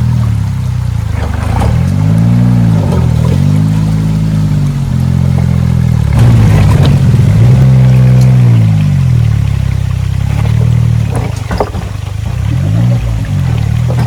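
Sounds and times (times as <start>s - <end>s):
engine revving: 0.0s - 14.0s
wheels knocking on rock: 5.3s - 14.0s.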